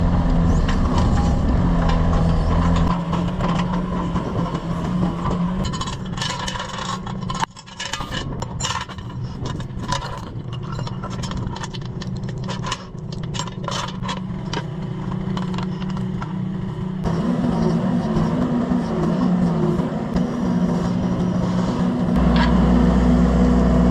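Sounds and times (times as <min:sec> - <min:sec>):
excavator engine running: 0:00.0 - 0:23.9
bucket scraping and clattering: 0:00.8 - 0:16.2.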